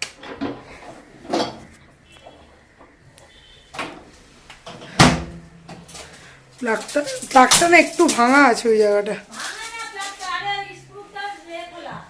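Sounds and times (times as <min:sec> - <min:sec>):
handling sounds: 0:05.7 - 0:11.6.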